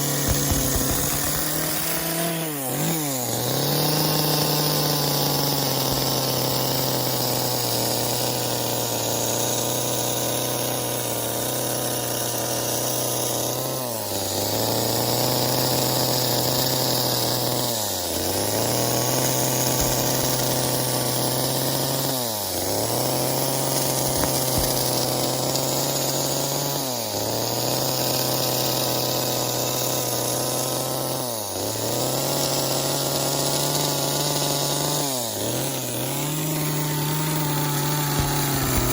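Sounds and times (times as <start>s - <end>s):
chainsaw carving wood: 0.0s - 38.9s.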